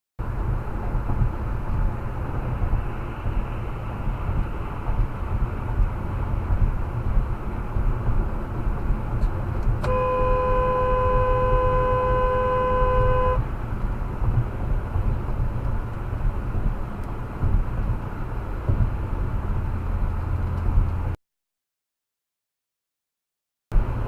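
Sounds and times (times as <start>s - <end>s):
car road and engine rumble: 0.2s - 21.2s, 23.7s - 24.0s
car horn blast: 9.8s - 13.5s.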